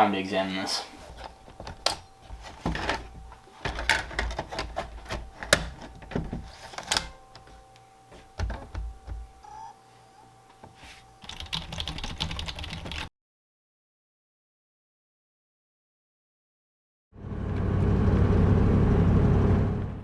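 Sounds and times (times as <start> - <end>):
faint steady electronic tone: 0.0 - 13.0
typing on computer keyboard: 11.2 - 13.1.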